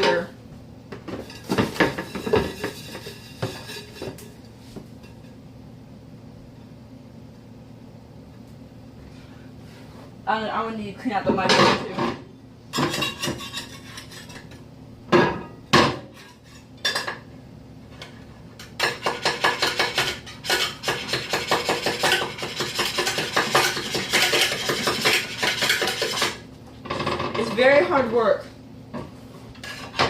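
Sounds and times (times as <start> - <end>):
spatula scraping and knocking dish: 0.9 - 5.4, 12.8 - 14.6, 18.0 - 27.8.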